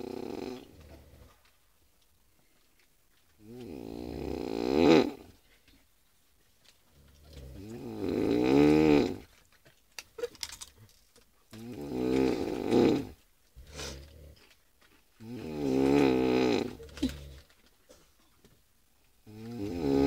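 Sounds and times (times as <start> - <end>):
person snoring: 0.0 - 0.8, 3.5 - 5.2, 7.6 - 9.2, 11.6 - 14.3, 15.2 - 17.4, 19.3 - 20.0
quiet breaths: 0.0 - 9.6, 10.8 - 20.0.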